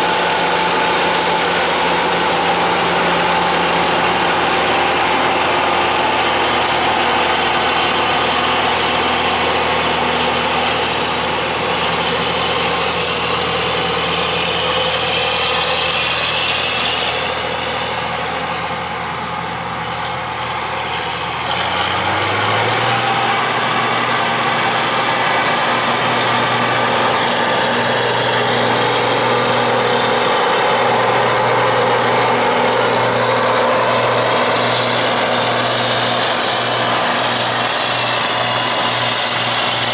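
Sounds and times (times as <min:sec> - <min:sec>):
combine harvester drone: 0:00.0 - 0:39.9.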